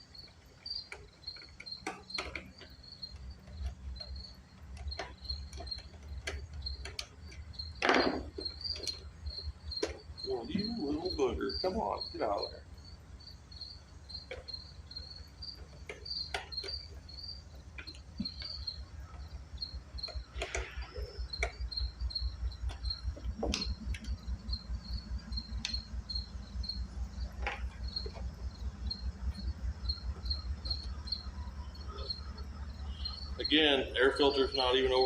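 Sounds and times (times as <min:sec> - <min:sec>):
crickets chirping: 0:00.0 - 0:35.0
clicks and knocks of hand tools: 0:00.6 - 0:09.0
low pulsing hum: 0:17.1 - 0:34.9.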